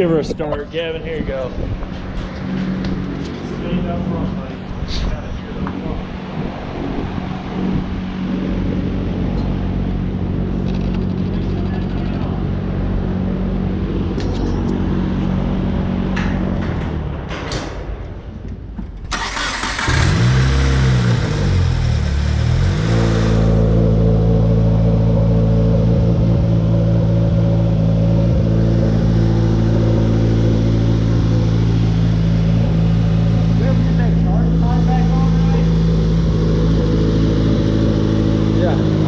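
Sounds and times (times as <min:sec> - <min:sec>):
car engine starting and idling: 0:00.0 - 0:39.0.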